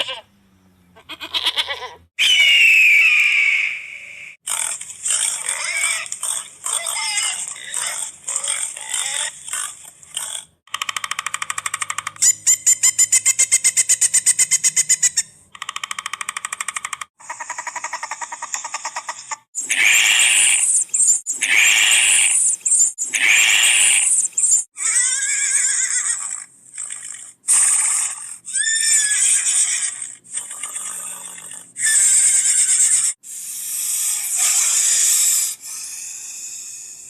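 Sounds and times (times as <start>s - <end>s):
high gliding animal call: 1.0s - 4.4s.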